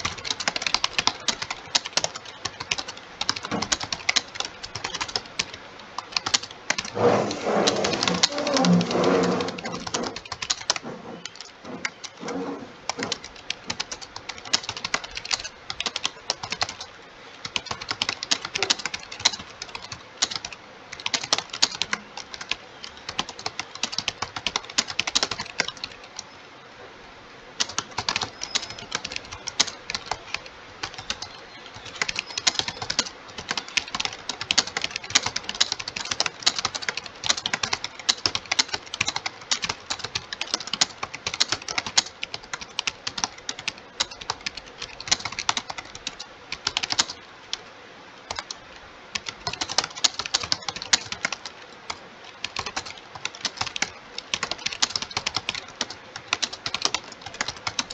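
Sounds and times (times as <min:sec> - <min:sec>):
keyboard typing: 0:00.0 - 0:26.2, 0:27.6 - 0:47.2, 0:48.3 - 0:57.9.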